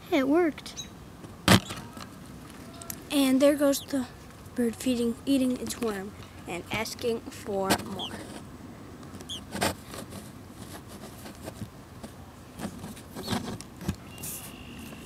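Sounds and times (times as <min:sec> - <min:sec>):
nestling birds cheeping: 0:03.6 - 0:04.0, 0:14.0 - 0:15.0
handling rustling and knocks: 0:07.5 - 0:14.2.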